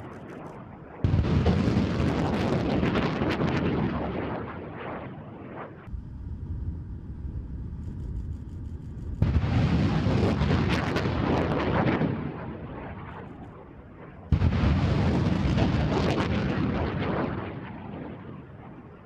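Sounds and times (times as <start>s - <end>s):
rocket launch roar: 0.0s - 7.4s, 9.2s - 13.3s, 14.3s - 18.9s
rocket launch blast: 1.0s - 5.9s, 9.2s - 13.1s, 14.3s - 18.5s.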